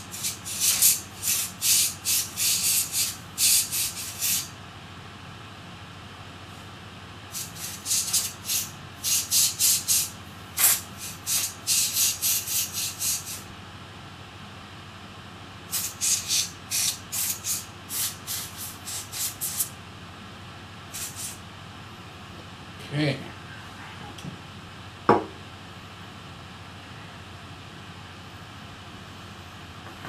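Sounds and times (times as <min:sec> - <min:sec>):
compressed air hissing blasts: 0:00.0 - 0:04.6, 0:07.3 - 0:13.5, 0:15.7 - 0:19.7, 0:20.9 - 0:21.4.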